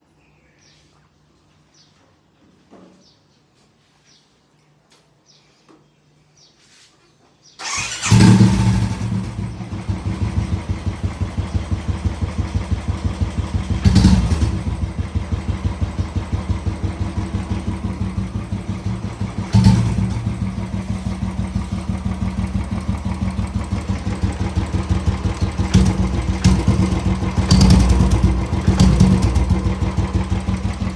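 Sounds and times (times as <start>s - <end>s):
engine starting: 7.6s - 9.5s
motorcycle engine idling: 7.6s - 30.9s.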